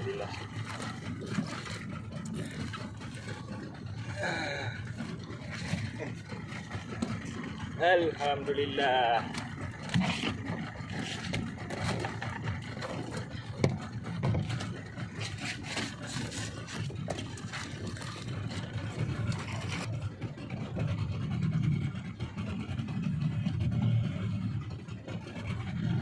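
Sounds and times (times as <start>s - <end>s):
boat motor rumbling: 0.0s - 26.0s
sharp knocks and clicks: 13.6s - 14.8s.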